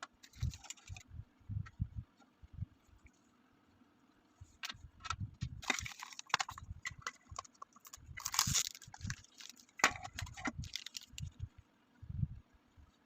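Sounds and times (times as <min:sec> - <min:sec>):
packaging rustling: 0:05.6 - 0:11.3.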